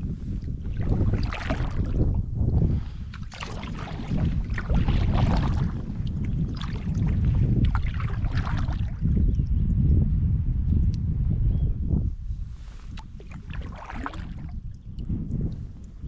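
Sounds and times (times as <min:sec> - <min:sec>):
water sloshing around a canoe: 0:00.0 - 0:09.3, 0:12.5 - 0:15.1
wind rumble on microphone: 0:00.0 - 0:16.0.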